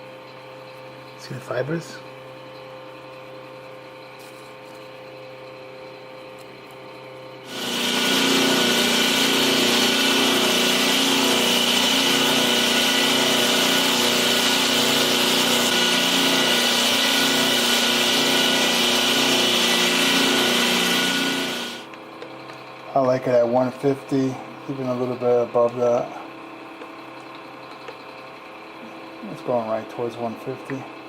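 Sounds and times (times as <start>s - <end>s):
electric power tool whining: 7.5s - 21.9s.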